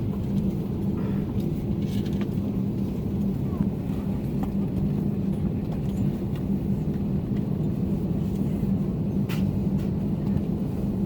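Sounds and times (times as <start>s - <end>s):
airliner cabin rumble: 0.0s - 11.0s.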